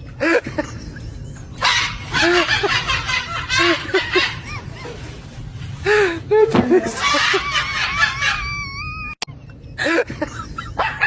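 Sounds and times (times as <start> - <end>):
dog barking: 1.6 - 4.4, 10.8 - 11.0.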